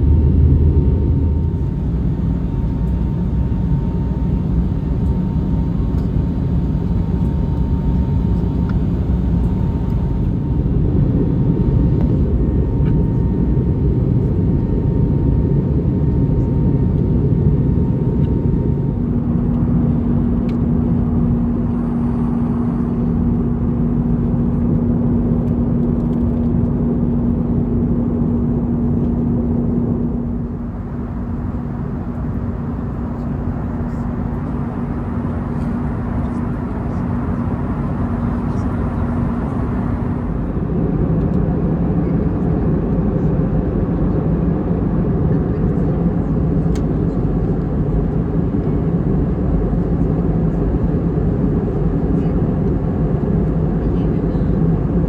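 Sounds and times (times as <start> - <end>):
lower steady hum: 0.0 - 11.1, 30.4 - 40.7
airplane cabin engine rush: 0.0 - 55.0
faint steady tone: 30.6 - 40.6.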